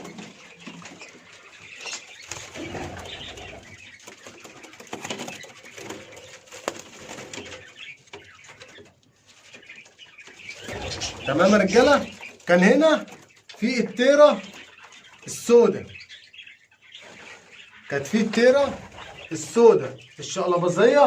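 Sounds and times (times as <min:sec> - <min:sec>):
pigeons flapping wings: 0:00.0 - 0:07.9
pigeons cooing: 0:00.0 - 0:08.8, 0:10.4 - 0:12.8, 0:16.4 - 0:20.1.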